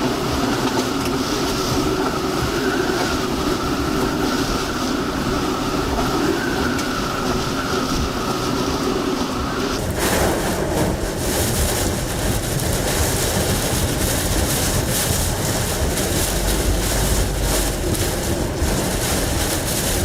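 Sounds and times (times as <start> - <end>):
strong wind buffeting microphone: 0.1 - 20.0.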